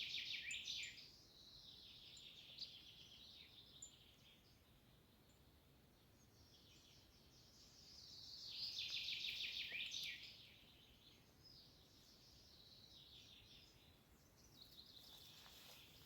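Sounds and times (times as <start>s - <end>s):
small songbirds singing: 0.0s - 16.0s.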